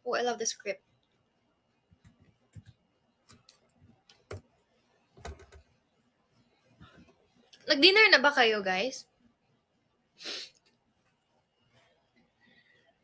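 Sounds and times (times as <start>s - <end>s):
faint clicks and taps: 1.8s - 7.6s.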